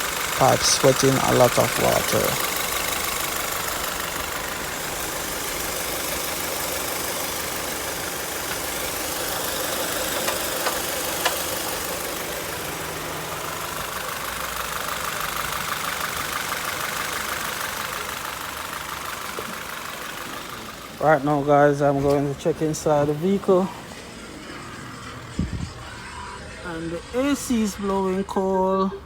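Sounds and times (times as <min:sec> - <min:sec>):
car engine idling: 0:00.0 - 0:29.0
wavering high whine: 0:23.2 - 0:29.0.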